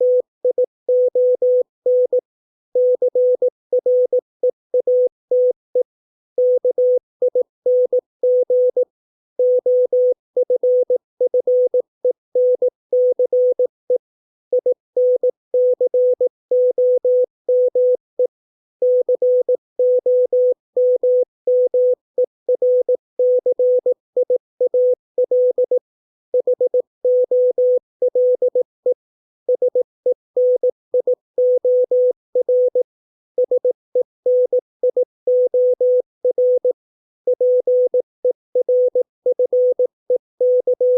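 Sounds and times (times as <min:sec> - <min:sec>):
morse code beeps: 0:29.5 - 0:32.8, 0:33.4 - 0:40.9.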